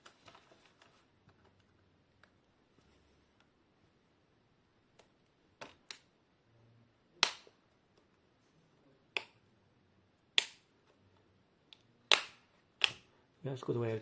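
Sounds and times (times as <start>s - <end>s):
plastic clips snapping loose: 11.7s - 13.1s.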